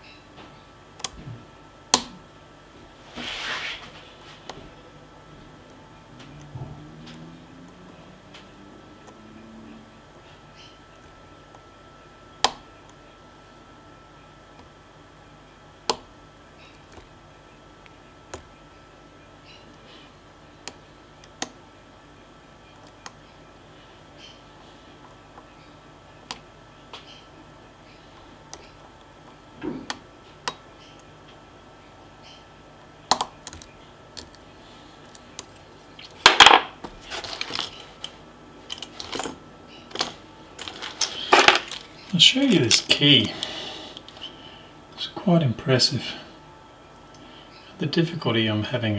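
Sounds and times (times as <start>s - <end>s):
faint steady hum: 0.0s - 48.9s
lock picks clicking: 33.1s - 34.4s, 35.0s - 44.2s
lock picks scraping: 35.0s - 44.4s
metal rattle: 36.2s - 43.0s.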